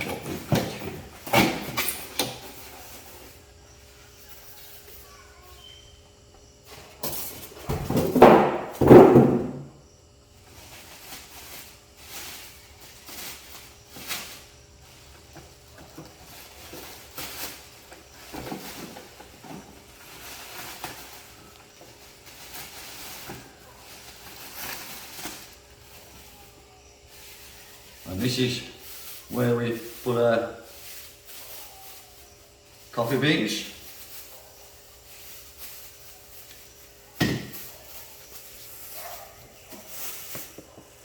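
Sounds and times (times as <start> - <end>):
packing material rustling: 10.6 - 26.5, 27.1 - 41.0.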